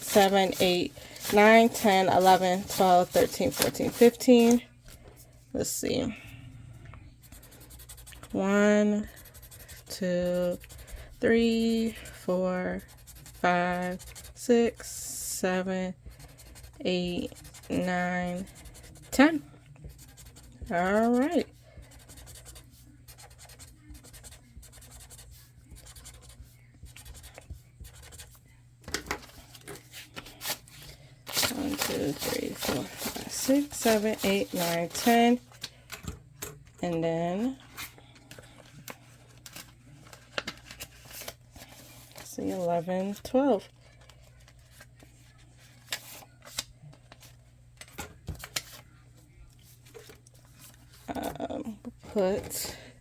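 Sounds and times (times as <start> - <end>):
paper rustling: 0.0 - 5.0, 29.1 - 35.8, 37.7 - 43.2
pen scribbling on paper: 7.3 - 11.9, 19.9 - 28.4.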